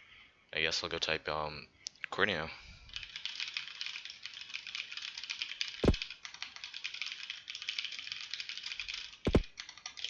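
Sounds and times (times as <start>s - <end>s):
typing on computer keyboard: 2.9s - 10.0s
heavy thump: 5.8s - 6.0s, 9.3s - 9.5s.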